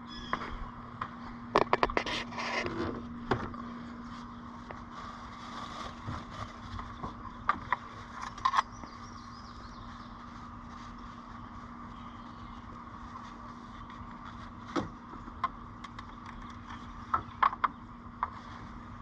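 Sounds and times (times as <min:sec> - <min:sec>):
steady low hum: 0:00.0 - 0:19.0
dipstick clicks and scrapes: 0:01.6 - 0:03.0.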